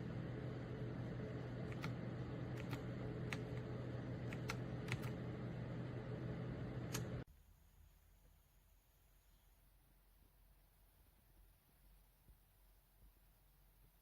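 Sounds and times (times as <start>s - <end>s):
steady low hum: 0.0s - 14.0s
mechanical keyboard key clicks: 4.3s - 5.1s.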